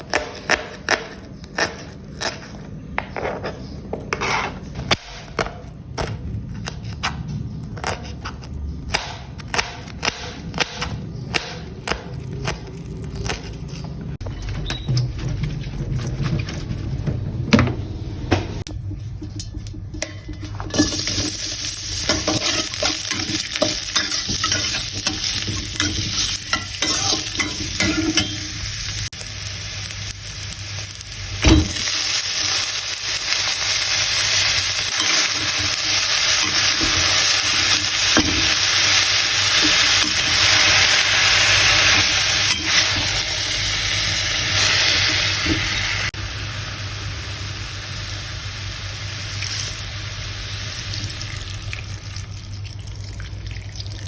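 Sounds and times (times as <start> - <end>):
spatula scraping a pan: 3.0 - 4.8, 22.0 - 28.5
food sizzling in a pan: 20.7 - 51.7.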